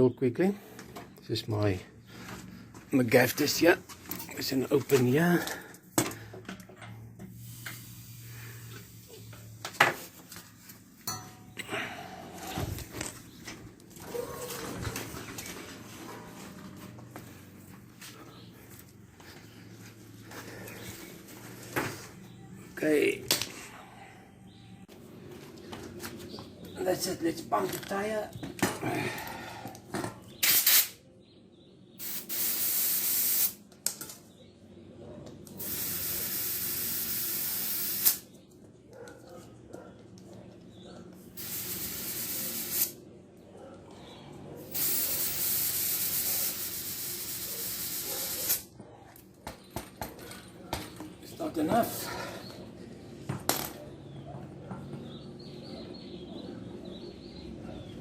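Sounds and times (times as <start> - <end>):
metal tools clinking: 4.0 - 7.1, 11.0 - 11.8
compressed air hissing: 7.3 - 9.6, 30.4 - 31.0, 32.0 - 33.6, 35.6 - 38.2, 41.4 - 43.0, 44.7 - 48.6.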